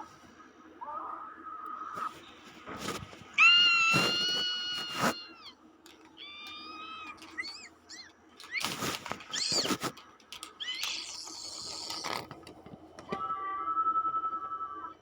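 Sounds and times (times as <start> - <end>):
cat hissing: 3.3 - 5.6, 6.2 - 10.0, 10.6 - 12.3
cat squealing and chirping: 3.3 - 12.4.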